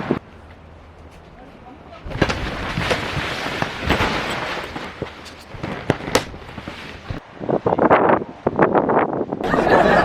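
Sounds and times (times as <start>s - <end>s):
heavy rain lashing tent fabric: 2.0s - 7.2s
sharp cracks and pops: 2.1s - 7.2s.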